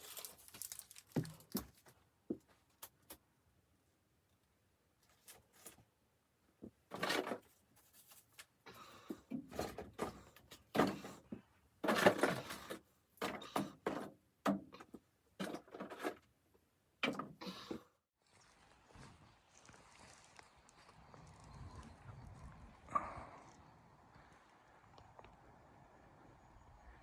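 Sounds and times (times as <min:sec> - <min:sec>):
handling knocks and scrapes: 0:06.6 - 0:16.4.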